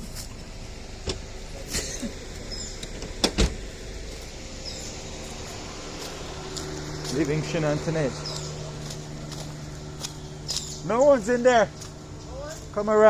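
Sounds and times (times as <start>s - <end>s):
steady low hum: 0.0s - 13.0s
car door opening and shutting: 0.9s - 1.4s, 2.0s - 3.7s.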